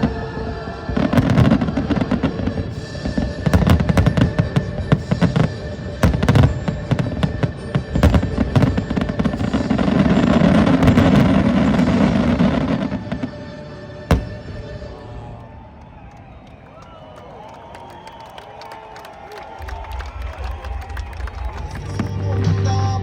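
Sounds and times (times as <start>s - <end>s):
music playing: 0.0s - 16.0s, 20.2s - 23.0s
fireworks bangs and crackles: 0.0s - 16.2s.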